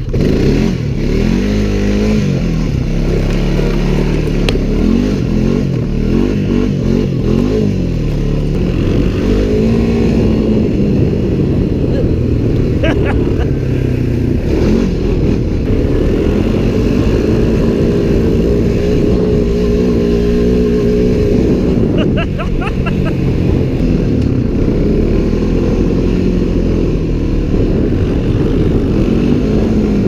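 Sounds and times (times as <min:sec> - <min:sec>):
atv engine running: 0:00.0 - 0:30.0
wind noise on microphone: 0:08.5 - 0:30.0.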